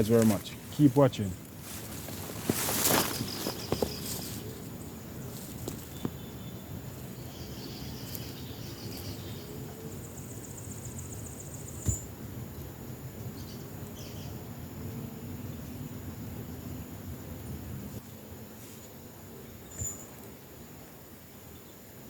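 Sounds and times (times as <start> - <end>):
bird chirps: 2.8 - 4.9, 5.8 - 12.1, 19.5 - 20.2.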